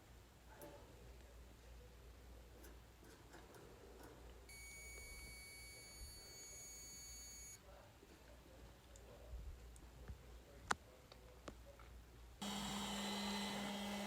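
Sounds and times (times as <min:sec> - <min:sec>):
multimeter continuity beep: 0:04.5 - 0:07.6.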